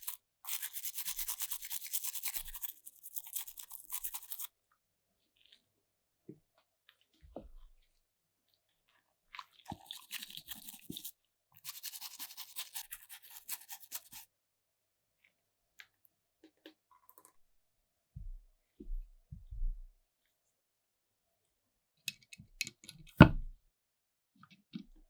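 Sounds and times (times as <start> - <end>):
hand scrubbing strokes: 0.0 - 4.5, 9.7 - 14.2.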